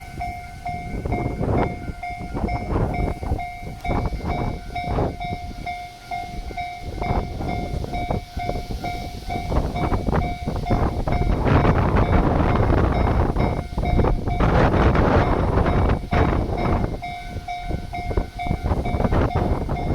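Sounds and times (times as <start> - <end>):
level crossing warning bell: 0.0 - 19.9
wind buffeting microphone: 0.0 - 19.9.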